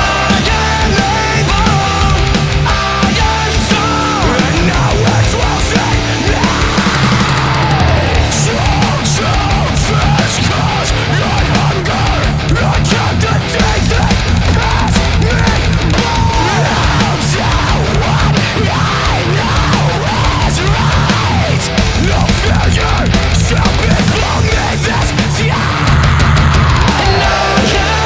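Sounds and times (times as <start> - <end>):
heavy metal music with guitar: 0.0 - 28.0.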